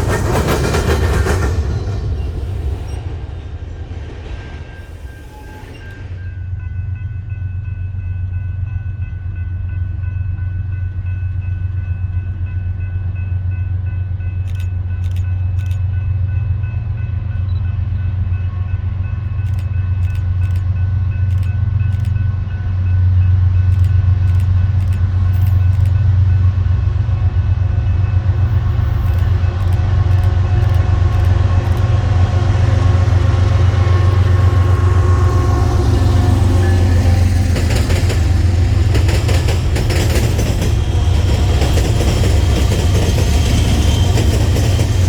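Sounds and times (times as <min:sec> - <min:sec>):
train rumbling past: 0:00.0 - 0:45.0
sharp clicks: 0:23.8 - 0:26.0, 0:29.1 - 0:31.9.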